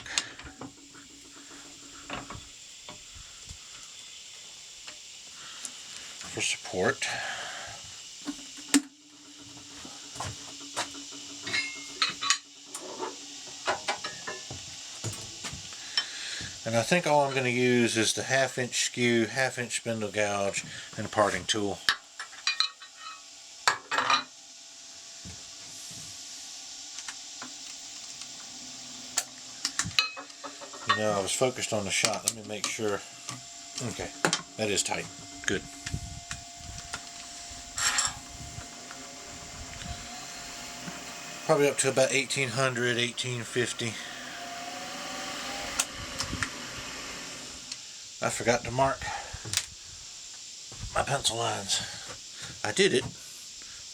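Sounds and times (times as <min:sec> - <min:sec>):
faint steady hum: 0:00.0 - 0:53.9
metal tools clinking: 0:11.4 - 0:13.1, 0:37.7 - 0:38.2.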